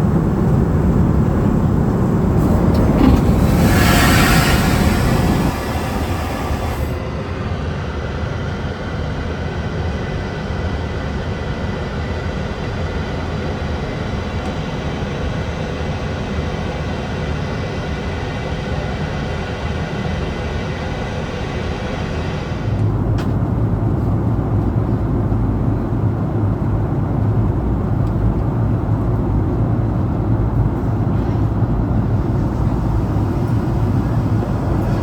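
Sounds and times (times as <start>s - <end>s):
airplane cabin engine rumble: 0.0s - 10.1s, 13.4s - 35.0s
rushing hiss: 2.4s - 7.0s, 32.0s - 35.0s.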